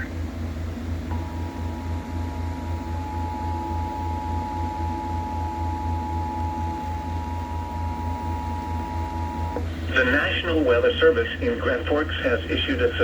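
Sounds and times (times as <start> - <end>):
low buzzing hum: 0.0 - 13.0
two-tone alarm: 1.1 - 9.6.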